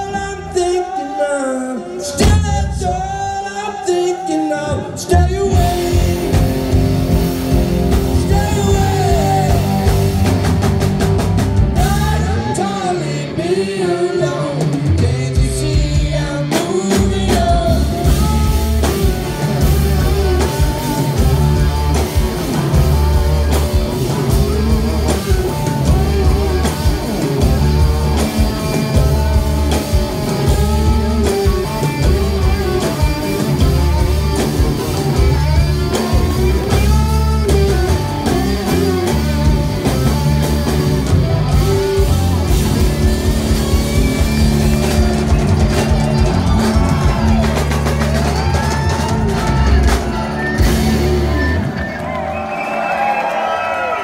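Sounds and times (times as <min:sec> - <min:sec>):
bass guitar: 0:00.0 - 0:01.1, 0:01.8 - 0:03.9, 0:04.7 - 0:53.1
drum kit: 0:02.0 - 0:03.9, 0:04.9 - 0:54.0
electric guitar lead lines: 0:05.4 - 0:52.4.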